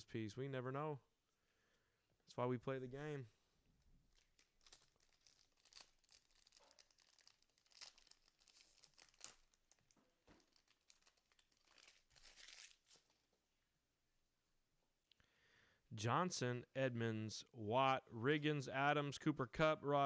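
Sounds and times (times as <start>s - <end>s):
foil wrapper crinkling and tearing: 4.1s - 13.3s.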